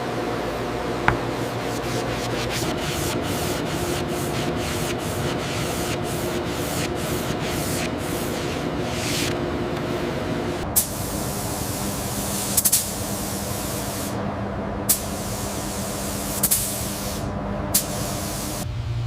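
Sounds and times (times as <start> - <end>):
low machine hum: 0.0 - 12.5
compressed air hissing: 10.8 - 14.2, 14.9 - 18.6.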